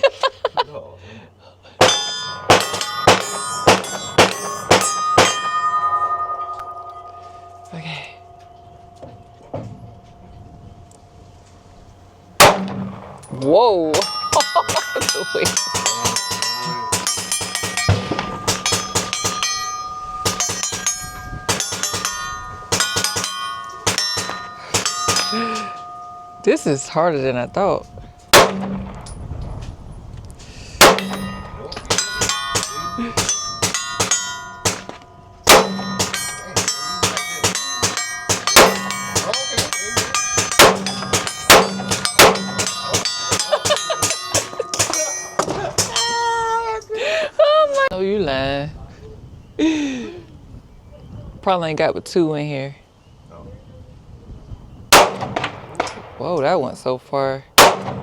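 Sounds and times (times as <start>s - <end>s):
steel plates ringing: 1.8s - 10.6s, 12.1s - 29.3s, 30.7s - 47.2s
handgun shots: 12.4s - 13.1s, 30.8s - 34.9s, 35.5s - 43.4s, 57.6s - 58.0s
faint distant gunshots: 28.4s - 29.0s.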